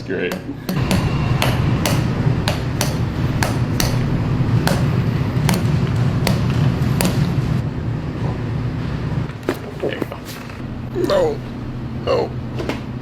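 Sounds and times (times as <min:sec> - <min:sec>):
sharp knocks: 0:00.3 - 0:07.4.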